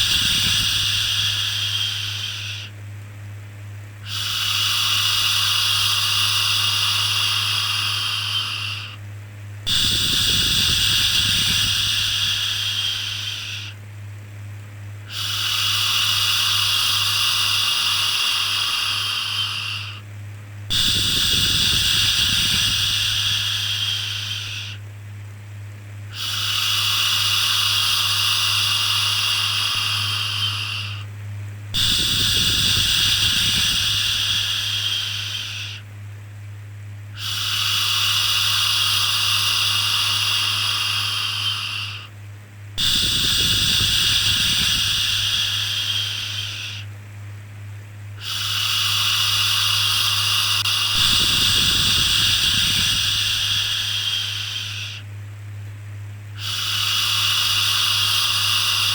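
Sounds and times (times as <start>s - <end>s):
steady low hum: 0.0s - 58.9s.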